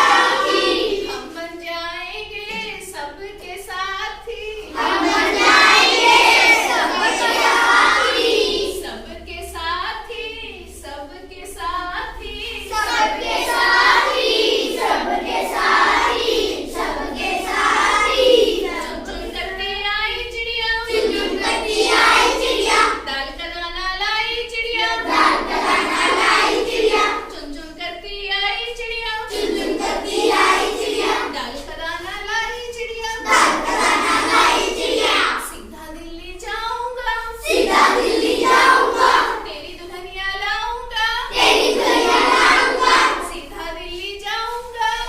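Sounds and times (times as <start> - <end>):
children singing in chorus: 0.0 - 1.5, 4.2 - 10.9, 11.6 - 23.4, 24.5 - 27.8, 28.8 - 31.8, 32.4 - 35.7, 37.2 - 40.0, 40.8 - 45.0.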